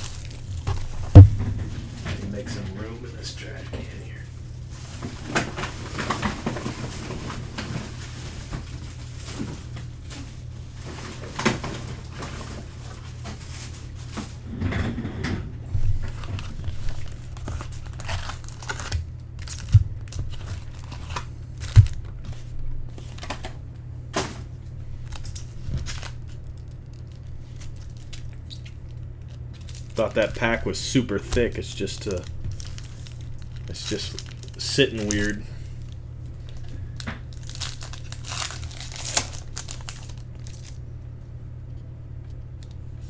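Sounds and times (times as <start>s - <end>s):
wrappers crinkling and tearing: 0.0s - 3.0s, 4.2s - 14.4s, 16.0s - 23.5s, 25.0s - 40.9s
steady low hum: 0.0s - 43.0s
sharp knocks: 1.0s - 2.4s.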